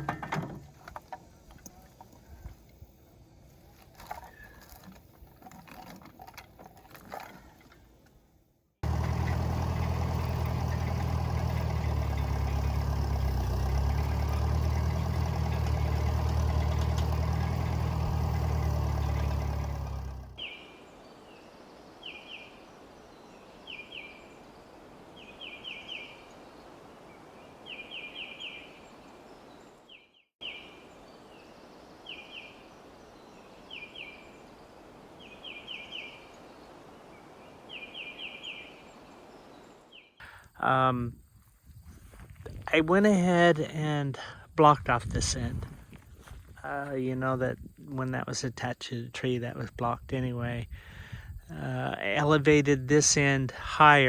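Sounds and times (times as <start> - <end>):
faint outdoor hiss: 0.0 - 6.8, 7.4 - 54.0
engine running: 8.8 - 20.5
small birds chirping: 8.8 - 40.7.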